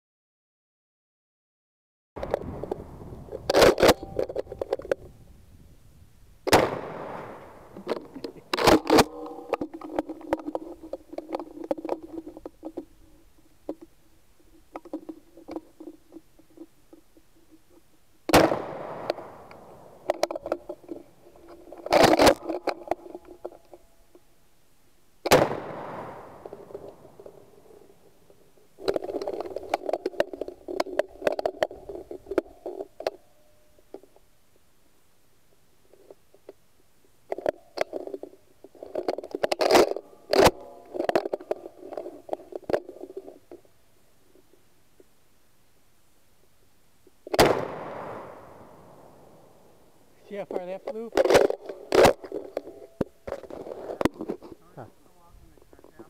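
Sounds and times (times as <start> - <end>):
shotgun shots: 6.5 - 7.8, 18.3 - 20.0, 25.2 - 26.8, 47.3 - 49.4
rattling and clicking: 7.8 - 18.0.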